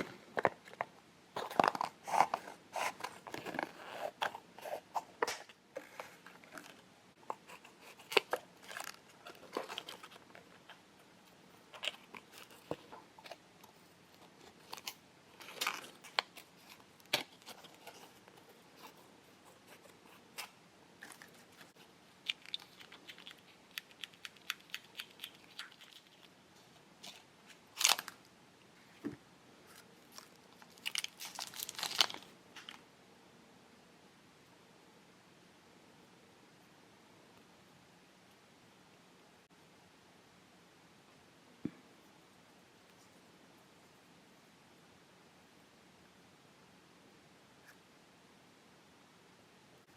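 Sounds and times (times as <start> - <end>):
plastic packets crinkling: 27.0 - 28.2, 30.1 - 32.8.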